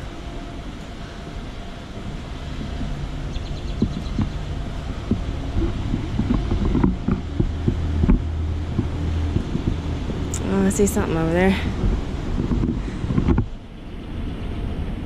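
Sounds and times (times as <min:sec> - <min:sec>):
low background rumble: 0:00.0 - 0:15.0
footsteps and handling bumps: 0:02.6 - 0:10.4, 0:11.8 - 0:13.5.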